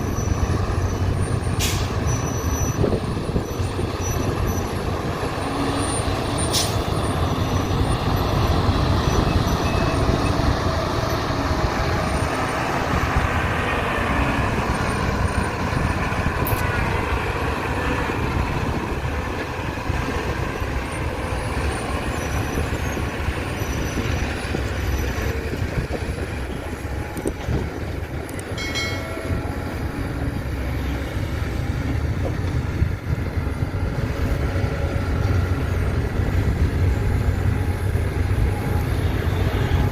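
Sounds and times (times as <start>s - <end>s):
heavy diesel engines rumbling: 0.0s - 39.9s.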